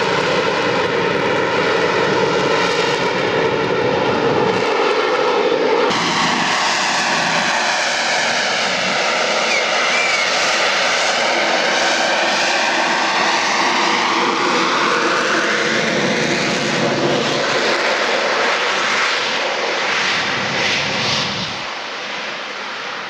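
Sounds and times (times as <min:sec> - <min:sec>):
jet engine roaring: 0:00.0 - 0:23.0.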